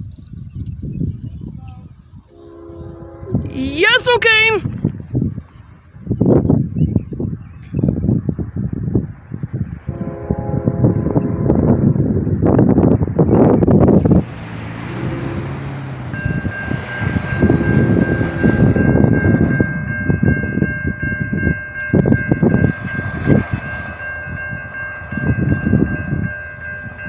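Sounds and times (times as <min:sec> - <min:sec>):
train rumble: 0:01.5 - 0:27.0
wheels clattering on rail: 0:11.1 - 0:27.0.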